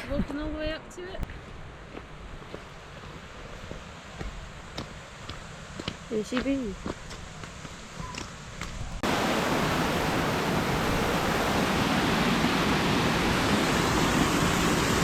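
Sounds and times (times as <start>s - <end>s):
waterfall rushing: 9.0s - 15.0s.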